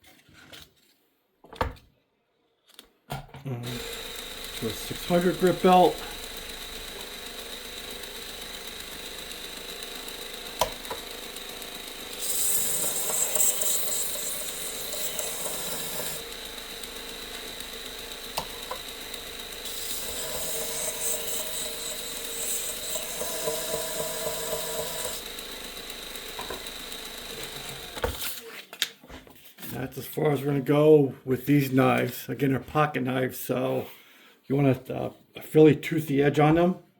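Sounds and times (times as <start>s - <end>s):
belt sharpener motor hum: 3.6s - 28.5s.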